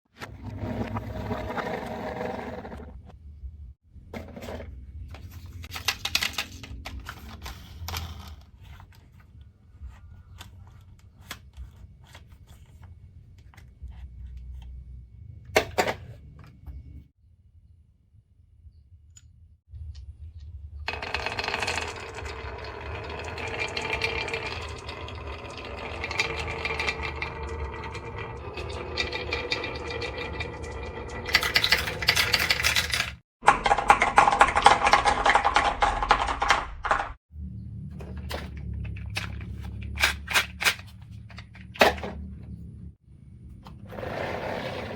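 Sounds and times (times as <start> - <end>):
marbles rolling and clattering: 20.9 - 37.2
low rumble: 37.3 - 43.7.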